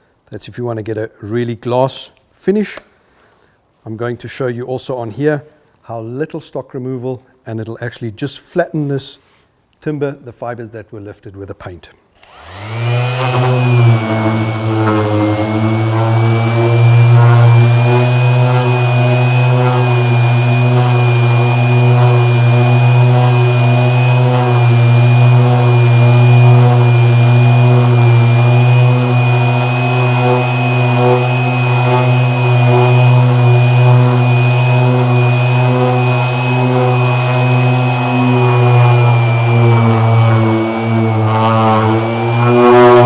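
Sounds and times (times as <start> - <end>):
orbital sander humming and whining: 12.3 - 43.0.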